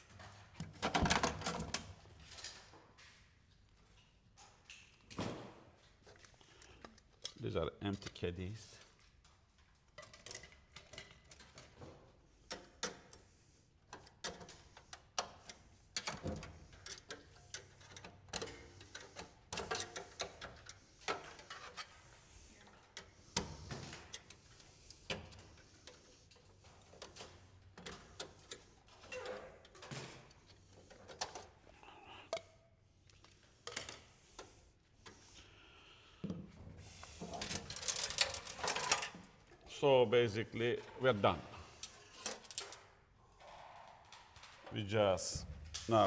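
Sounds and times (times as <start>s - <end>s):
server parts clicking and clattering: 13.9s - 22.0s, 23.8s - 31.7s, 37.0s - 40.0s, 40.6s - 43.0s.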